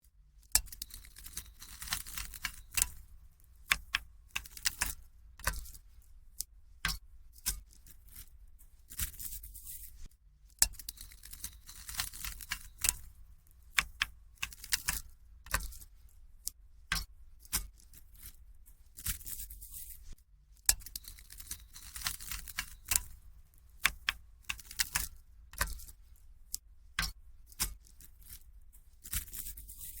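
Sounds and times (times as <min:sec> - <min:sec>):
paperclips clicking and jingling: 0:00.6 - 0:03.0, 0:03.7 - 0:05.6, 0:10.7 - 0:13.1, 0:13.8 - 0:15.6, 0:20.8 - 0:23.2, 0:23.8 - 0:25.9.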